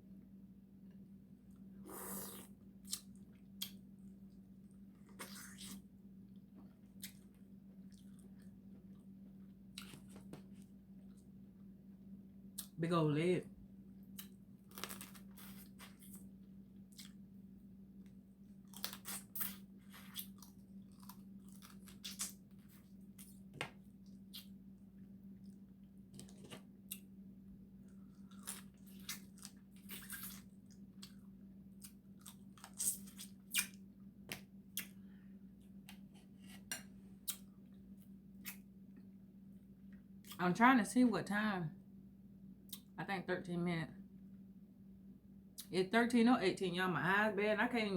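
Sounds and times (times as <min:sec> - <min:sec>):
steady low hum: 0:00.0 - 0:47.9
chewing and crunching: 0:02.3 - 0:11.3, 0:18.6 - 0:24.6, 0:27.8 - 0:33.8.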